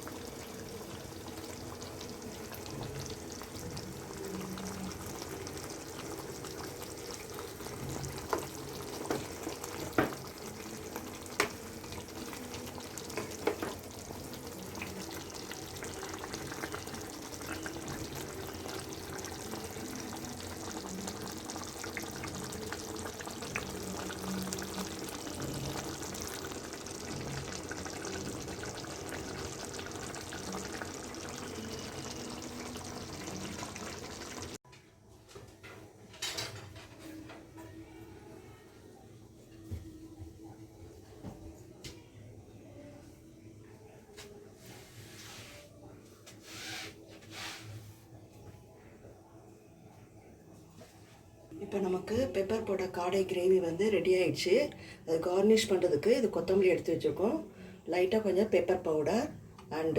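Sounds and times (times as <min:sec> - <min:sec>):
gravy sizzling in a pan: 0:00.0 - 0:34.6.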